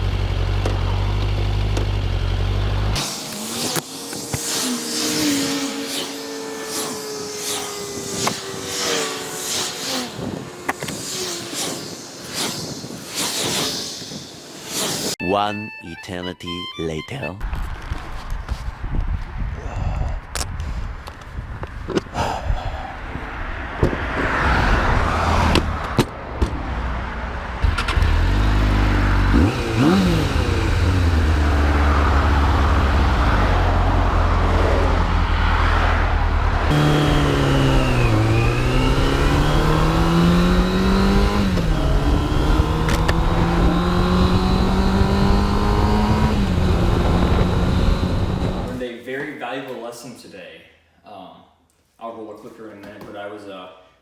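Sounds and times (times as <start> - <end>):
motorcycle engine accelerating: 0.0 - 15.2, 27.6 - 48.8
rough rushing wind noise: 3.0 - 15.2, 17.7 - 26.7, 30.0 - 48.8.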